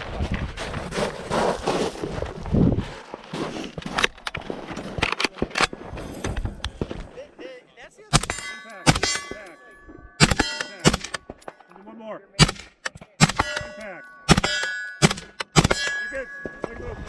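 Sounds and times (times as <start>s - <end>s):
rifle shots: 8.1s - 9.4s, 10.2s - 11.3s, 12.4s - 16.8s
steel target ringing: 8.1s - 11.4s, 13.2s - 17.0s.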